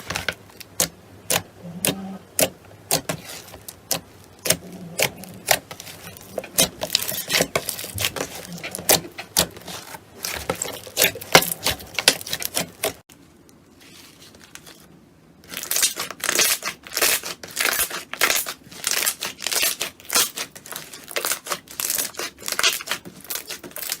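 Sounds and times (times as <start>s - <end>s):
slime crackling and popping: 15.5s - 24.0s.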